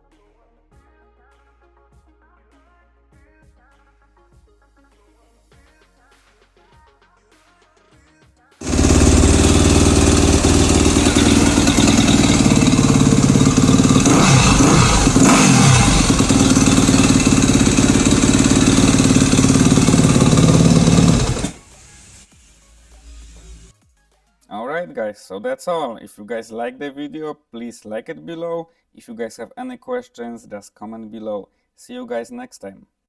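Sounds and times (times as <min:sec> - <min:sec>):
motorcycle engine running: 0:08.6 - 0:22.2.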